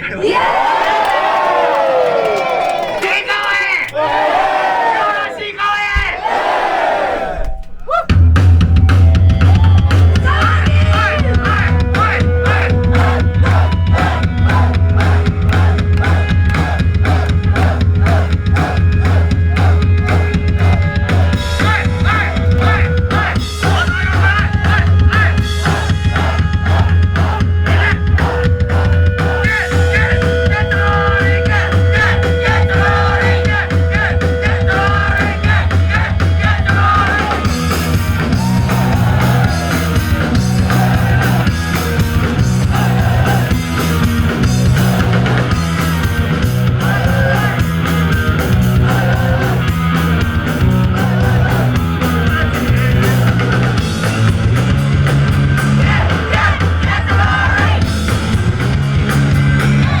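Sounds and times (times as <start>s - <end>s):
shouted vocals: 0.0s - 53.9s, 55.6s - 57.9s, 59.5s - 60.0s
punk rock band playing: 8.1s - 60.0s.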